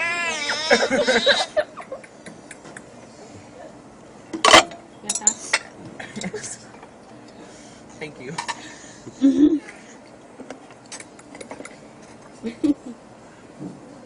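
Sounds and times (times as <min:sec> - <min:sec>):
baby squealing: 0:00.0 - 0:01.5.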